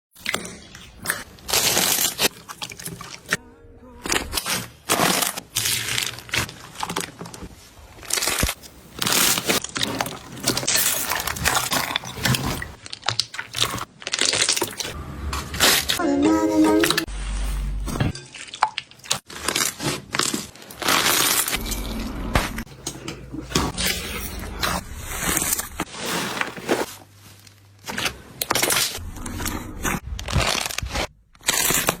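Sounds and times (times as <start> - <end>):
slime crackling and crunching: 4.0 - 16.0, 18.2 - 22.0, 23.5 - 32.0
brief pitched sound: 16.0 - 17.1.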